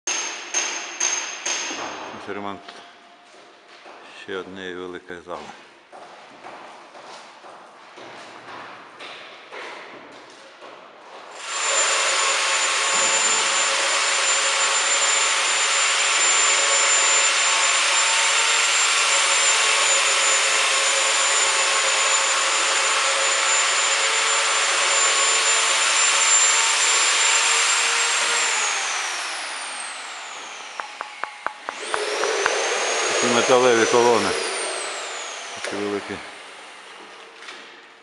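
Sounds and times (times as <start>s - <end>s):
electric power tool whining: 11.4s - 37.1s.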